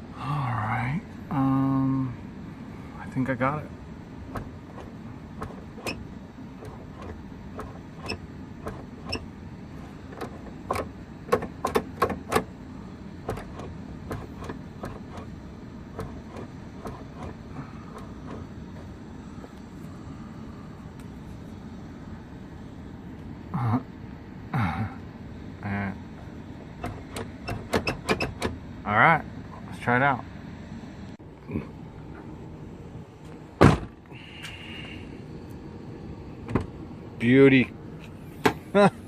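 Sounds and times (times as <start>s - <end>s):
steady low background hum: 0.0s - 39.0s
latch mechanism clicks and knocks: 10.1s - 12.5s, 13.2s - 15.3s, 26.8s - 28.6s.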